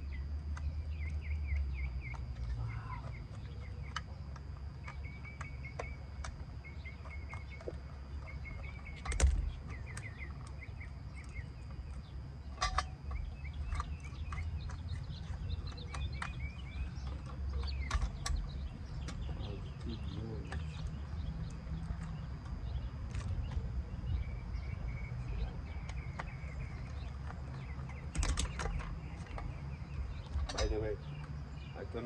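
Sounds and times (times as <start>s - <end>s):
small birds chirping: 0.0s - 32.0s
hand tools clicking and knocking: 11.2s - 22.4s, 25.1s - 32.0s.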